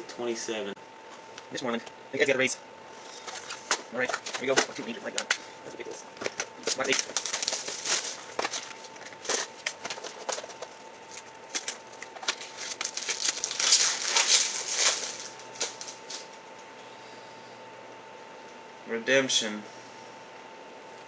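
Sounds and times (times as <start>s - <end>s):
shrink wrap crackling: 6.2s - 16.4s.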